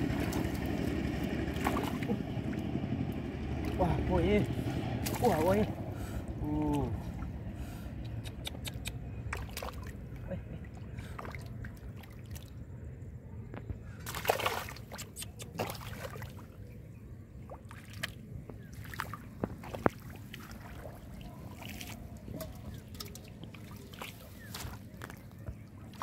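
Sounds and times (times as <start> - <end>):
muddy water sloshing and splashing: 0.0 - 8.0, 8.6 - 12.9, 13.9 - 26.0
water dripping: 22.4 - 24.7.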